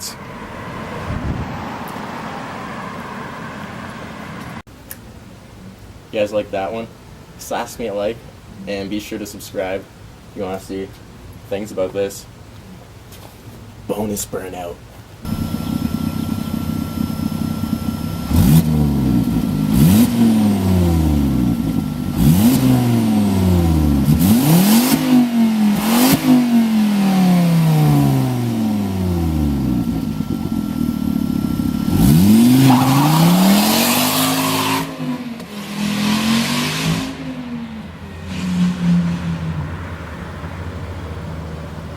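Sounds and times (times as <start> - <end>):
harsh rushing noise: 0.0 - 4.6
car engine revving hard: 15.3 - 41.4.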